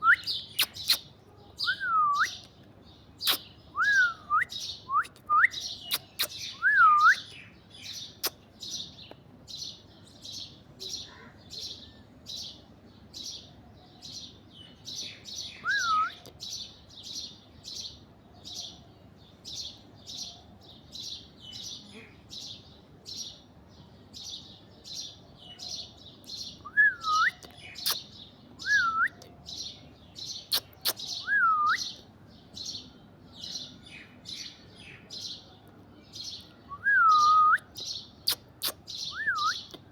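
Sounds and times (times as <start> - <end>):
whistled bird calls: 0.0 - 2.5, 3.2 - 7.4, 15.4 - 16.3, 26.6 - 29.3, 30.4 - 32.0, 36.7 - 39.8
birds chirping: 0.0 - 39.9.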